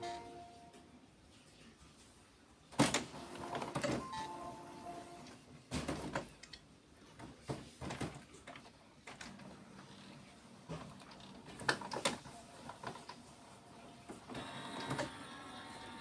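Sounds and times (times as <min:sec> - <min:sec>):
printer mechanism clunking and clicking: 0:02.8 - 0:04.1, 0:14.3 - 0:15.2.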